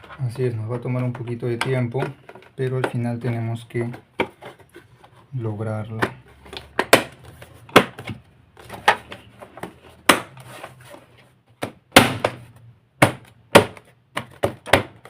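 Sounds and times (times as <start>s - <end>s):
hard plastic knocks and clicks: 0.8s - 4.7s, 11.5s - 15.0s.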